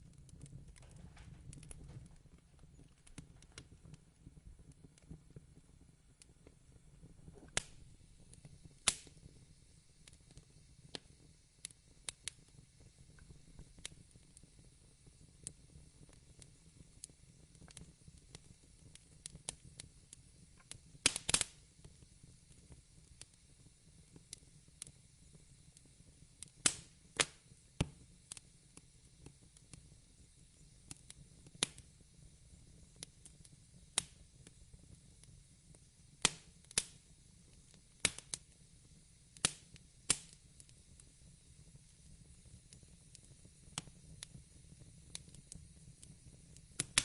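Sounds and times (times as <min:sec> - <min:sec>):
wood fire crackling: 0:00.0 - 0:47.0.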